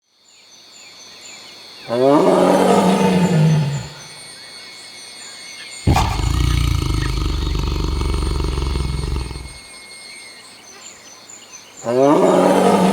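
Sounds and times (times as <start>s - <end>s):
high chirps of birds or insects: 0.1s - 12.9s
tiger roaring: 5.9s - 9.6s.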